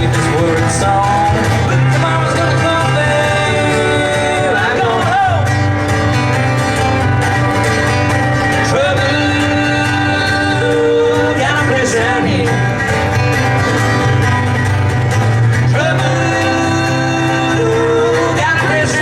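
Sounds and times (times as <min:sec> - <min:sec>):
person singing: 0:00.0 - 0:05.6, 0:08.6 - 0:12.7, 0:15.7 - 0:19.0
bluegrass music with plucked strings: 0:00.0 - 0:19.0
steady bass: 0:00.0 - 0:19.0.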